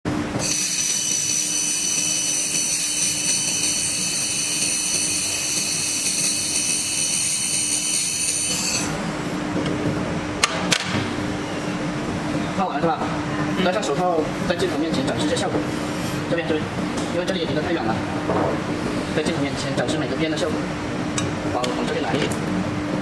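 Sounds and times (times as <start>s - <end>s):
laser welder high-pitched whine: 0.1s - 9.4s
steady low hum: 0.1s - 23.0s.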